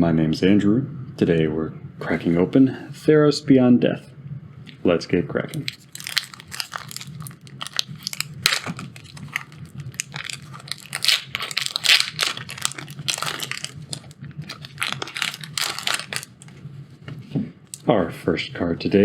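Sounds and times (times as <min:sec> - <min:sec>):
foil wrapper tearing and crinkling: 0:05.6 - 0:16.5.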